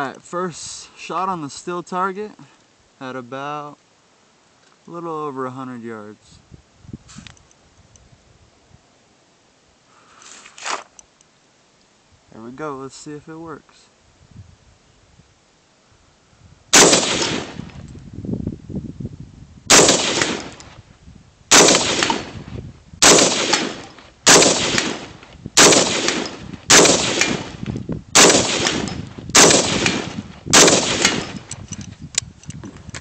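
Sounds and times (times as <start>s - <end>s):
rifle shots with echo: 16.7s - 17.7s, 19.7s - 20.6s, 21.5s - 22.4s, 23.0s - 27.6s, 28.2s - 31.5s.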